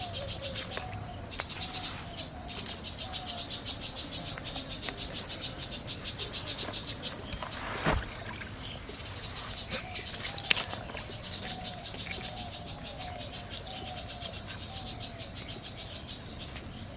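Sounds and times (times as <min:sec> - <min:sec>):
insect chirping: 0:00.0 - 0:16.9.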